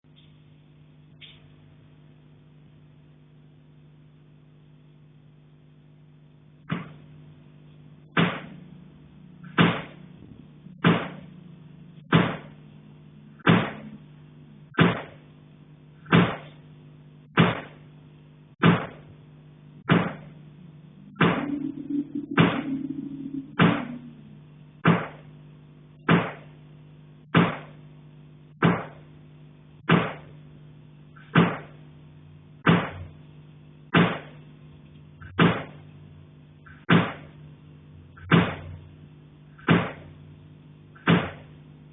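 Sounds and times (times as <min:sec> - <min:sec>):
steady low hum: 0:00.0 - 0:41.9
sharp knocks with echo: 0:08.2 - 0:08.6, 0:09.5 - 0:10.0, 0:10.8 - 0:11.3, 0:12.1 - 0:12.6, 0:13.4 - 0:14.0, 0:14.7 - 0:15.2, 0:16.1 - 0:16.6, 0:17.3 - 0:17.8, 0:18.6 - 0:19.1, 0:19.8 - 0:20.3, 0:24.8 - 0:25.3, 0:26.1 - 0:26.5, 0:27.3 - 0:27.8, 0:28.6 - 0:29.0, 0:29.9 - 0:30.3, 0:31.3 - 0:31.8, 0:32.6 - 0:33.1, 0:33.9 - 0:34.4, 0:38.2 - 0:38.8, 0:39.6 - 0:40.1, 0:41.0 - 0:41.5.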